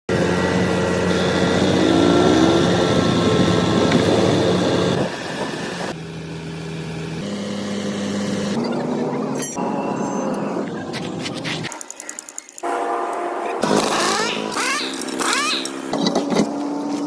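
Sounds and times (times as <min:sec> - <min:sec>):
heavy vehicle engine running: 0:00.1 - 0:11.7.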